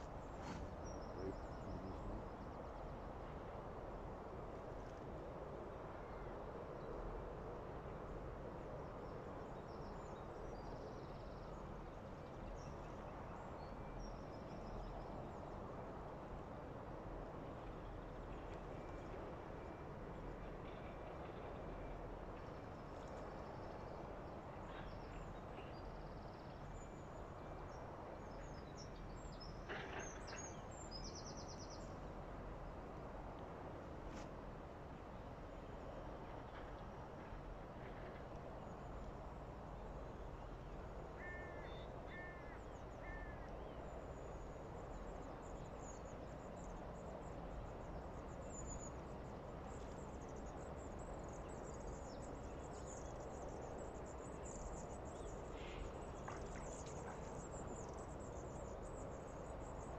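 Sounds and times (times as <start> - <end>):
outdoor background noise: 0.0 - 59.9.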